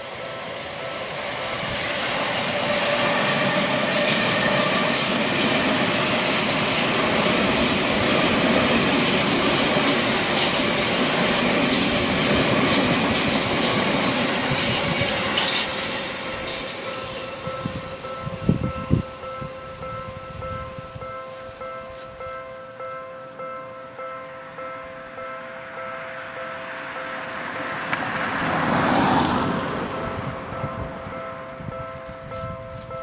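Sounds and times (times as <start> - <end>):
crossing warning bell ringing: 0.0 - 33.0
electric train passing: 0.0 - 33.0
wheels clacking over rail joints: 0.4 - 17.5.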